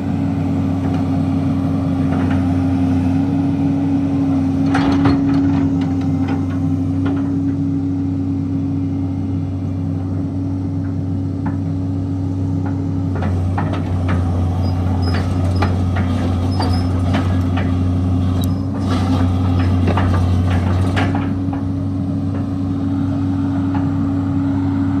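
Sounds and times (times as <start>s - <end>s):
excavator diesel engine running: 0.0s - 25.0s
sharp clicks and clanks: 12.6s - 18.8s.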